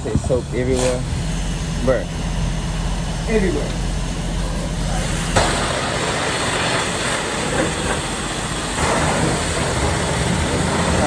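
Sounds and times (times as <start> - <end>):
water spray hissing on car: 4.8 - 11.0.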